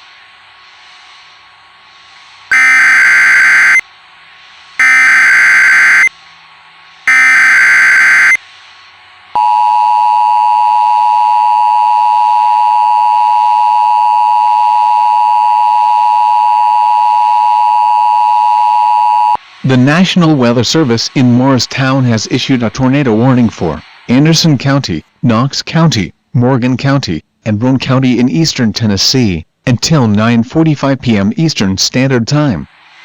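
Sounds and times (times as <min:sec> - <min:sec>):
screeching data bursts: 0:02.5 - 0:03.8, 0:04.8 - 0:06.1, 0:07.1 - 0:08.4
two-tone attention signal: 0:02.5 - 0:03.8, 0:04.8 - 0:06.1, 0:07.1 - 0:08.4, 0:09.4 - 0:19.4.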